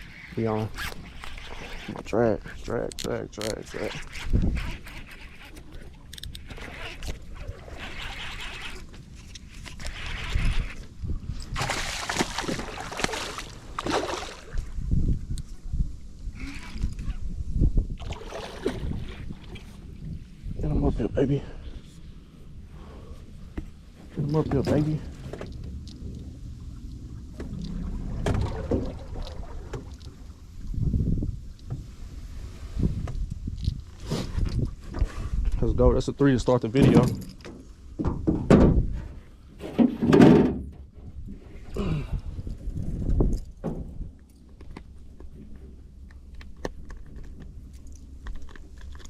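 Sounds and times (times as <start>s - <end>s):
water sloshing around a boat: 0.0s - 15.6s, 17.8s - 35.6s
wind buffeting the microphone: 3.6s - 8.5s, 9.2s - 36.3s, 37.8s - 39.4s, 40.7s - 44.2s
knocks and handling noise on boat: 23.4s - 30.4s, 36.6s - 41.7s, 42.8s - 49.0s.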